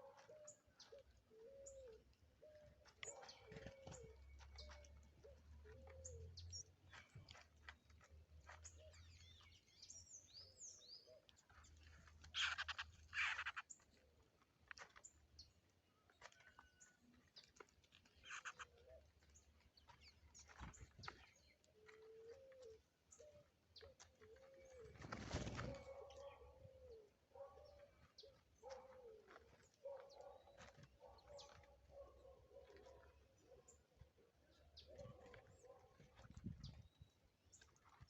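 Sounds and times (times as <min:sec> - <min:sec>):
dove cooing: 0:00.0 - 0:06.2, 0:24.2 - 0:27.5, 0:34.8 - 0:35.8
small birds chirping and whistling: 0:12.2 - 0:13.8, 0:18.2 - 0:22.6.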